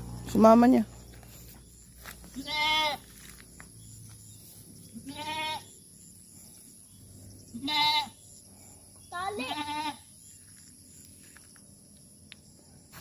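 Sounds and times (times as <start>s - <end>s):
goat bleating: 2.3s - 3.1s, 4.9s - 5.8s, 7.5s - 8.2s, 9.1s - 10.1s.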